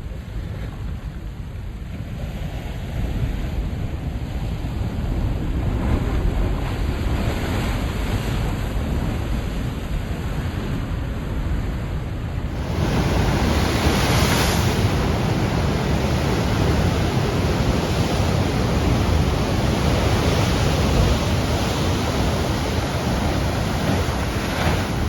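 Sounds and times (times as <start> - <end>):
wind on microphone: 0.0 - 25.0
waves breaking on rocky shore: 12.5 - 25.0.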